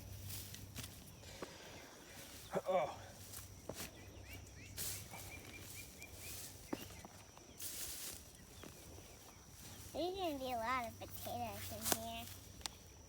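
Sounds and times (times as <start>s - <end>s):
bird chirping: 1.1s - 7.6s.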